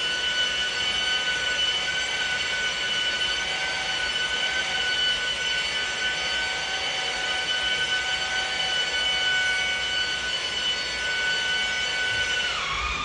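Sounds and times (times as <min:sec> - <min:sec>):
rotary buffer polishing glass: 0:00.0 - 0:13.0.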